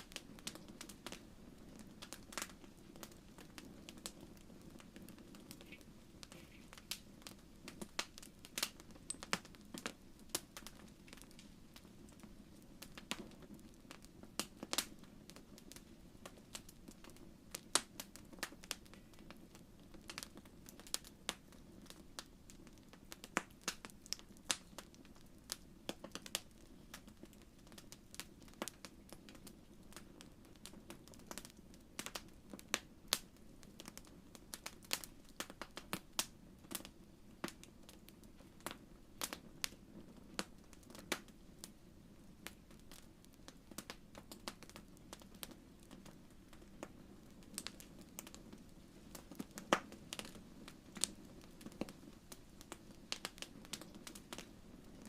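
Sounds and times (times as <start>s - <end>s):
low rush of flame: 0.0s - 25.6s
wood fire crackling and popping: 0.0s - 55.0s.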